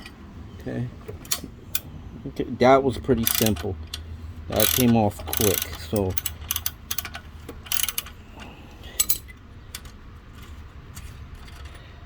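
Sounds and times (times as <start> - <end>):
metallic clicks and rattles: 3.2 - 11.9.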